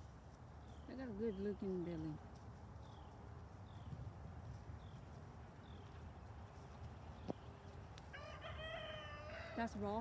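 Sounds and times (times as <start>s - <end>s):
rooster crowing: 8.1s - 9.7s.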